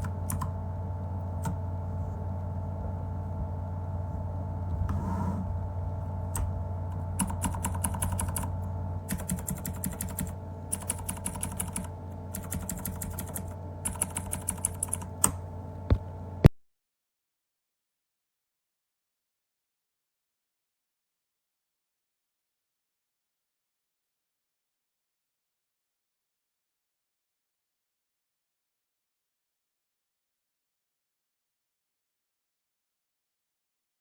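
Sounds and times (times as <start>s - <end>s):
clicky mechanical keyboard typing: 0.0s - 0.6s, 6.3s - 16.0s
steady low hum: 0.0s - 16.5s.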